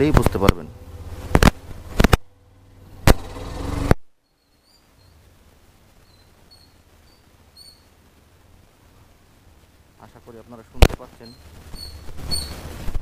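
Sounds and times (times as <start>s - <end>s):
motorcycle running: 0.0s - 4.1s
rush of noise: 0.0s - 13.0s
faint bird chirps: 4.2s - 5.3s, 6.0s - 8.0s, 11.2s - 12.7s.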